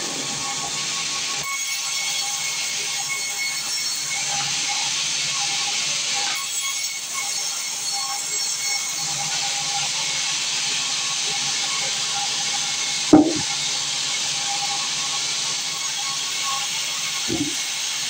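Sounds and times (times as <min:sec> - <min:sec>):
sawmill machinery running: 0:00.0 - 0:18.0
loud knock: 0:13.2 - 0:13.5.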